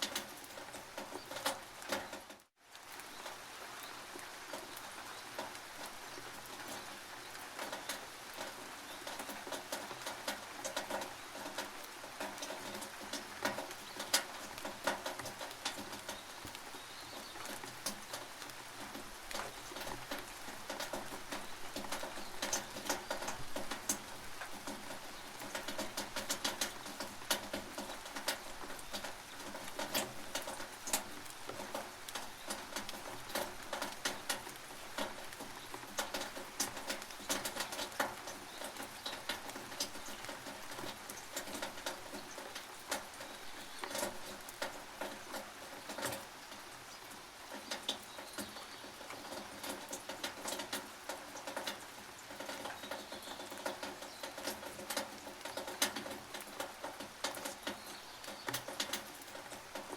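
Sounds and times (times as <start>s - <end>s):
rain on a tin roof: 0.0s - 59.9s.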